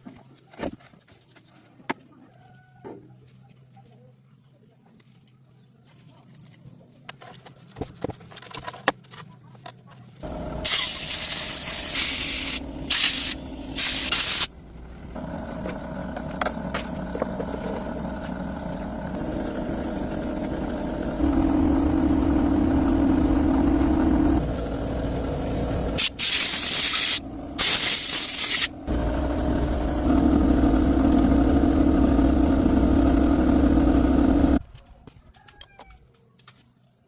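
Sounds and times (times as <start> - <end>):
machine humming: 10.2 - 34.6
loud hissing spray: 10.6 - 14.5, 26.0 - 28.7.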